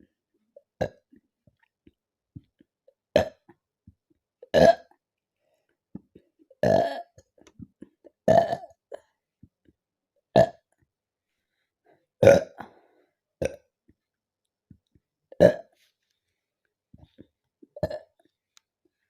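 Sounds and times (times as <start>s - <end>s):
woman burping: 4.5s - 5.0s, 6.6s - 7.2s, 8.2s - 9.0s, 12.2s - 12.7s, 15.3s - 15.8s, 17.8s - 18.1s.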